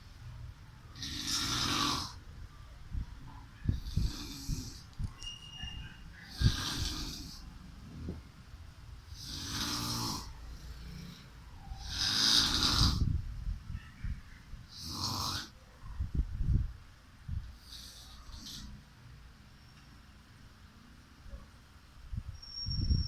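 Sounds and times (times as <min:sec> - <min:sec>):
person snoring: 0:01.0 - 0:02.2, 0:03.7 - 0:04.8, 0:06.3 - 0:07.4, 0:09.2 - 0:11.2, 0:11.8 - 0:13.1.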